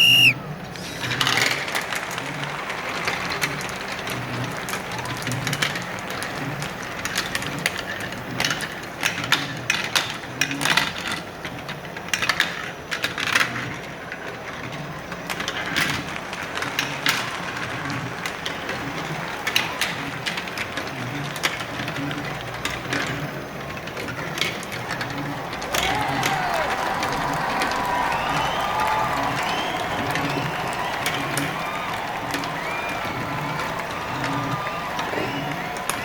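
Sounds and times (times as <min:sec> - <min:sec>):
marbles clattering on a track: 0:00.8 - 0:36.0
low background hum: 0:23.8 - 0:36.0.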